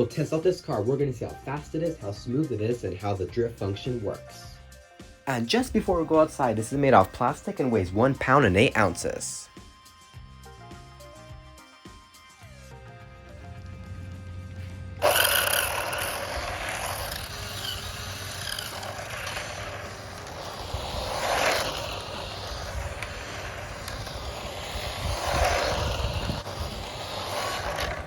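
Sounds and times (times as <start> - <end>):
remote-control car motor and tyres: 13.3 - 28.0.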